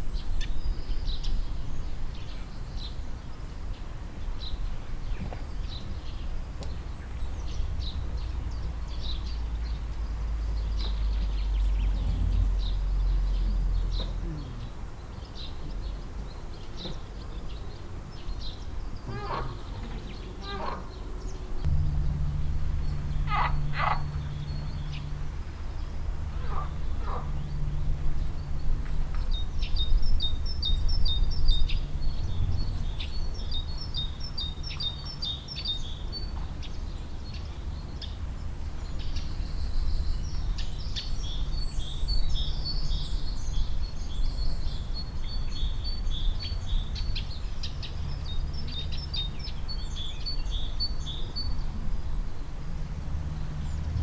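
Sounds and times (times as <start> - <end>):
steady low hum: 6.8 - 15.4, 19.5 - 33.4
frogs croaking: 23.0 - 24.4.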